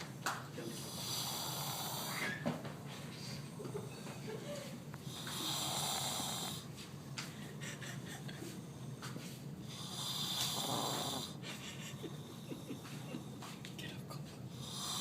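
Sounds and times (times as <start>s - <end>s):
man snoring: 0.7s - 2.2s, 5.1s - 6.6s, 9.7s - 11.4s, 14.6s - 15.0s.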